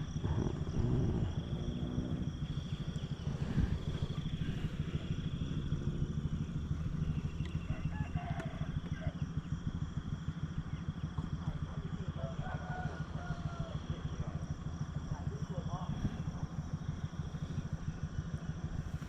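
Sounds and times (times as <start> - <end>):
small engine running: 0.0 - 19.0.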